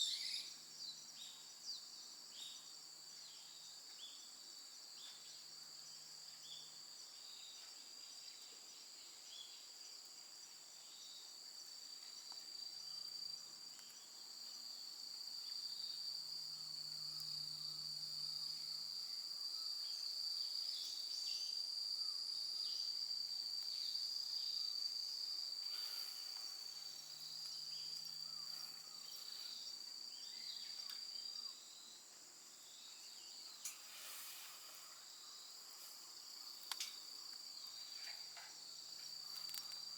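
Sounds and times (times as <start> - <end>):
insects trilling: 0.0 - 39.9
faint ticks: 30.7 - 31.1, 36.6 - 39.9.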